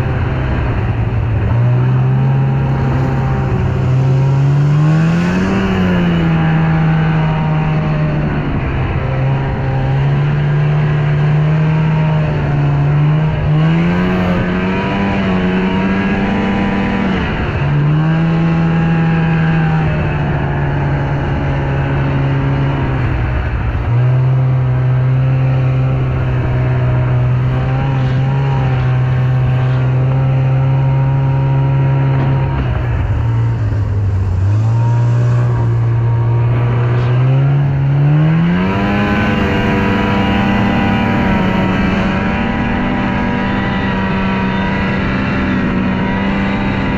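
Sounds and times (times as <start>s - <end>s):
snowmobile engine revving: 0.0s - 46.9s.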